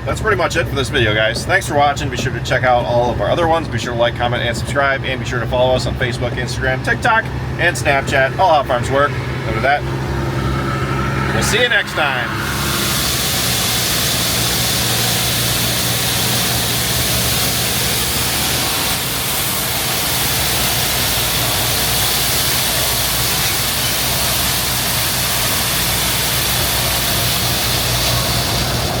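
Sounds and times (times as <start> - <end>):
truck engine running: 0.0 - 29.0
road and wind hiss: 5.8 - 29.0.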